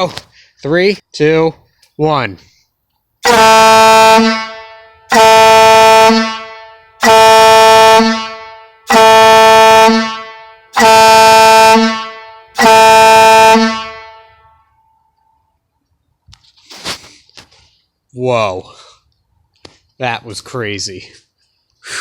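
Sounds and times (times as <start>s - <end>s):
air horn blasts: 3.2s - 14.9s.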